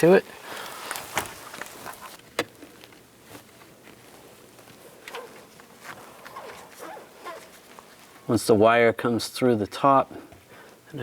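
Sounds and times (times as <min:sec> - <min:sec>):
tape rustling: 0:00.0 - 0:08.3.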